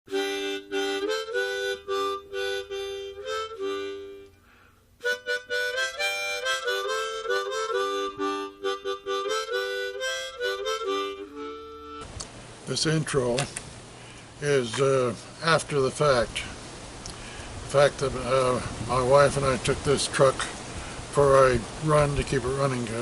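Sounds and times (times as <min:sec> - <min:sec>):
harmonica playing chopped chords: 0:00.1 - 0:12.1.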